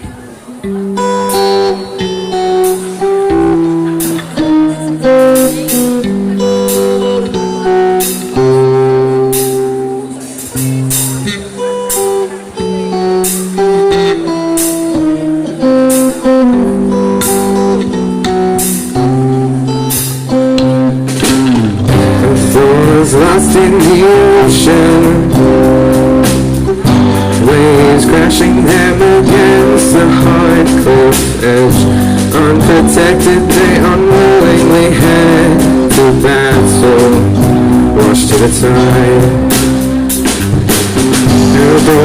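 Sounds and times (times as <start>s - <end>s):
strummed guitar: 0.0s - 42.0s
bass line: 0.7s - 42.0s.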